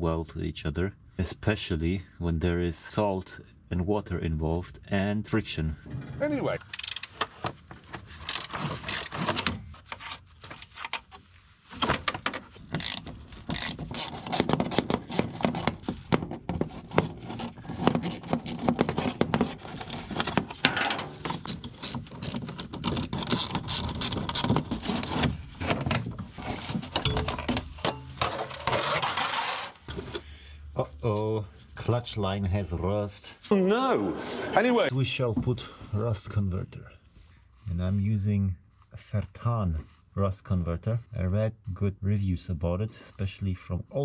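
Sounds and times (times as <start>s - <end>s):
metallic clicks and scrapes: 5.9s - 7.4s, 8.0s - 11.2s, 12.6s - 15.6s, 17.1s - 25.3s.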